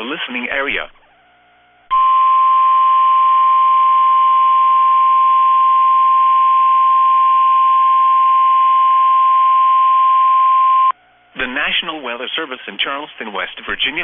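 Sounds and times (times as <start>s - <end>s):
steady warning alarm tone: 1.9s - 11.0s
faint radio hiss: 10.6s - 14.0s.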